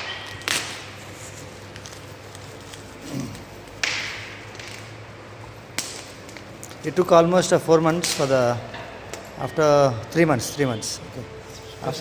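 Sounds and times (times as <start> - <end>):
packaging tearing: 0.3 - 3.8.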